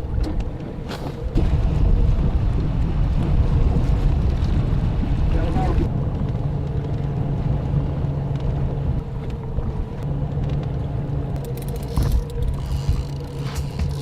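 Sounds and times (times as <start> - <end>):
boat motor running: 0.0 - 14.0.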